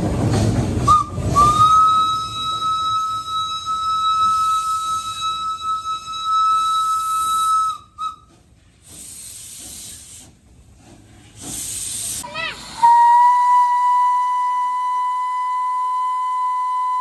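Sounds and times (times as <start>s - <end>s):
steam hissing: 0.6s - 13.5s
steam locomotive whistle: 0.9s - 8.3s, 12.7s - 17.0s.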